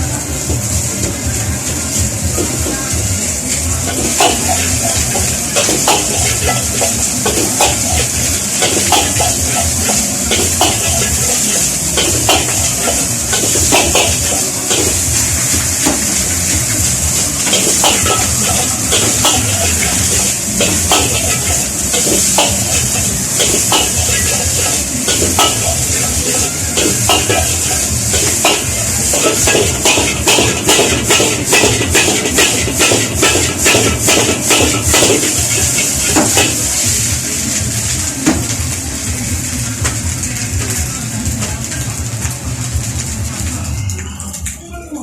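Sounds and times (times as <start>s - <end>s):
frying sizzle: 0.0s - 45.0s
metal spatula scraping a wok: 3.9s - 37.5s.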